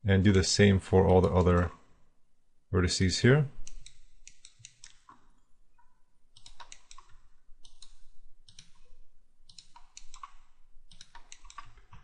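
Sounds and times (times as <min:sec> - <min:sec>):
computer mouse clicking: 0:03.6 - 0:12.0.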